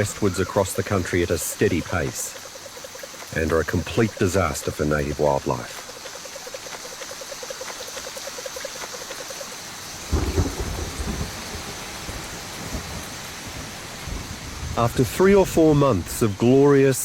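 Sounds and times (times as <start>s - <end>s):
toad trilling: 0.0s - 9.7s
steady rain: 0.0s - 17.0s
thunder rumbling: 10.1s - 14.4s.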